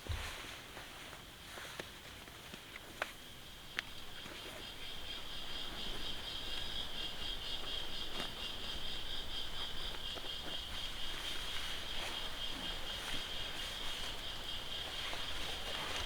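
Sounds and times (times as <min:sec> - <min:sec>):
insects trilling: 0:03.4 - 0:16.0.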